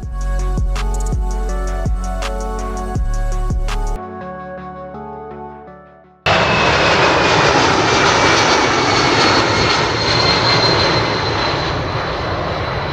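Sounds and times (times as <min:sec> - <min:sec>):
jet engines running with whine: 0:06.3 - 0:12.9.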